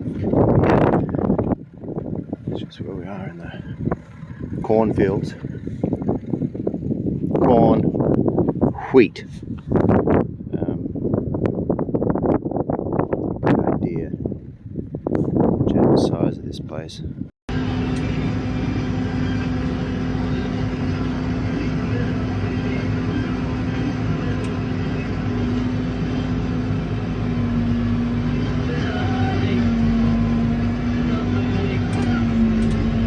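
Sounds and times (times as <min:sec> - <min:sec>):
vehicle engine running: 0:00.0 - 0:07.3, 0:17.5 - 0:33.0.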